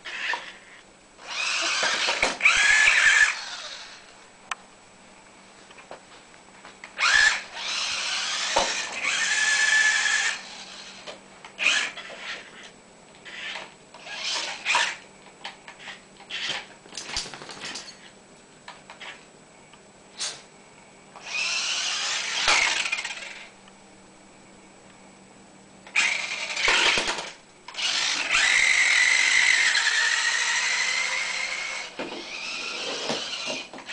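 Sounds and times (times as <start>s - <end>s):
toy car motor whirring: 0.1s - 4.0s, 7.0s - 15.0s, 15.7s - 16.7s, 21.2s - 23.5s, 25.9s - 33.9s.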